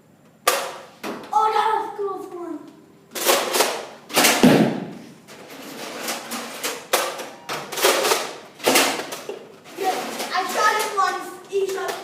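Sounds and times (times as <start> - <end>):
thud: 4.2 - 5.0.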